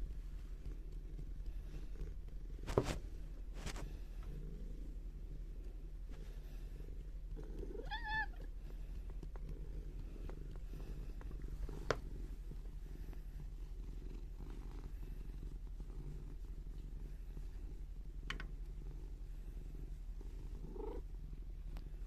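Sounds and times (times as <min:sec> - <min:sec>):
cat purring: 0:00.0 - 0:22.0
cat meowing: 0:07.7 - 0:08.5.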